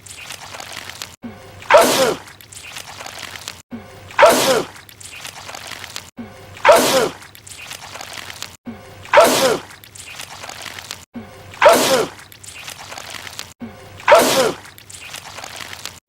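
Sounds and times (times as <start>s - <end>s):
man sneezing: 11.6s - 12.2s, 14.1s - 14.6s.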